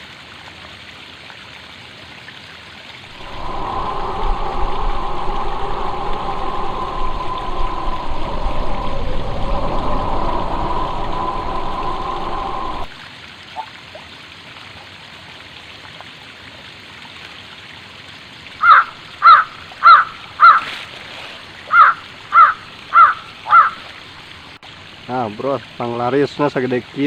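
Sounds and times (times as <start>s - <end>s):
steady droning noise: 3.1s - 12.9s
animal calling loudly: 18.6s - 20.6s, 21.7s - 23.8s.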